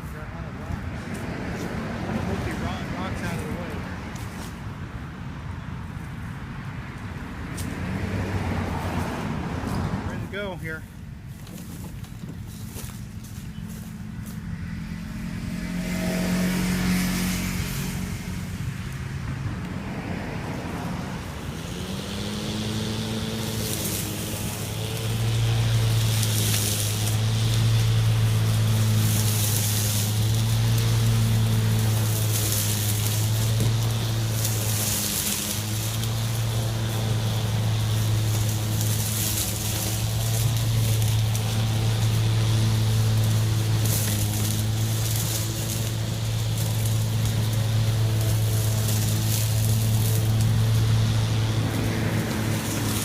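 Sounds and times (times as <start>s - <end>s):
electric lawn mower humming: 11.6s - 53.0s.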